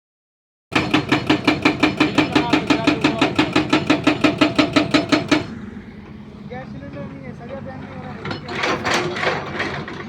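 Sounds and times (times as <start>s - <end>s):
concrete breaker hammering: 0.7s - 5.6s, 8.1s - 10.0s.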